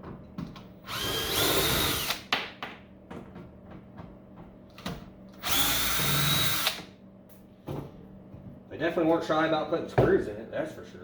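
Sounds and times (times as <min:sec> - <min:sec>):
power drill whine: 0:00.8 - 0:02.2, 0:05.4 - 0:06.8.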